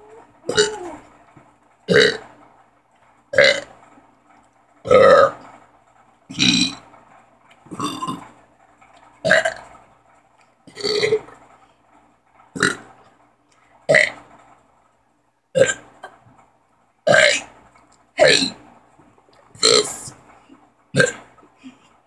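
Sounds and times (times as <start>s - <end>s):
boy burping: 0.0s - 1.0s, 10.7s - 11.3s, 21.0s - 21.3s.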